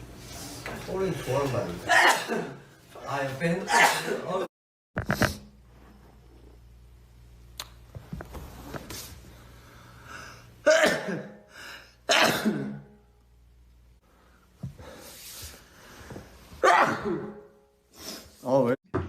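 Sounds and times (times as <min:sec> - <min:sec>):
person sneezing: 0:01.9 - 0:02.6, 0:03.7 - 0:04.5, 0:10.6 - 0:11.5, 0:12.1 - 0:13.0, 0:16.6 - 0:18.3.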